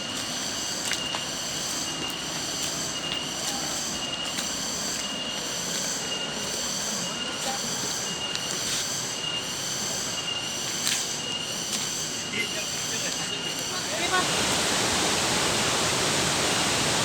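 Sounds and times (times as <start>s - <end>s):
waterfall rushing: 13.8s - 17.0s.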